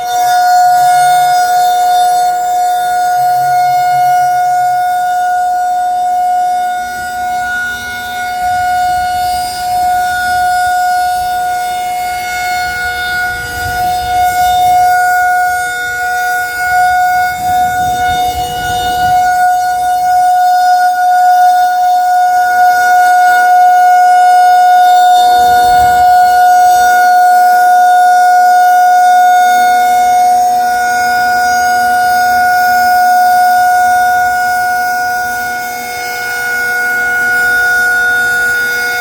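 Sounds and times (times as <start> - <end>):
rotating warning siren: 0.0 - 39.0
faint low rumbling: 24.8 - 27.4.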